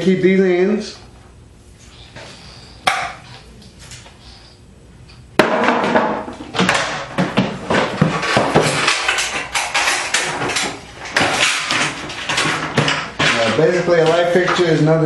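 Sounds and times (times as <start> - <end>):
metal rattling and knocks: 5.4 - 14.8.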